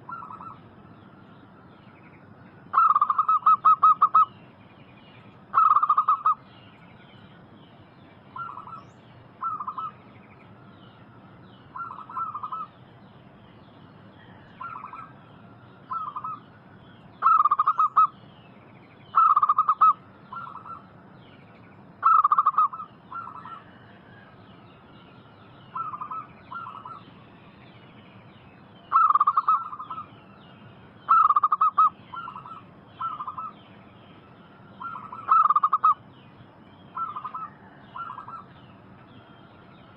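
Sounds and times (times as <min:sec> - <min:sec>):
doves cooing: 0:00.0 - 0:00.6, 0:02.7 - 0:04.3, 0:05.5 - 0:06.4, 0:08.4 - 0:10.0, 0:11.8 - 0:12.8, 0:14.2 - 0:15.2, 0:17.2 - 0:18.1, 0:19.1 - 0:20.8, 0:22.0 - 0:24.3, 0:25.7 - 0:27.0, 0:28.9 - 0:30.1, 0:31.1 - 0:33.5, 0:34.7 - 0:36.0, 0:36.9 - 0:38.5.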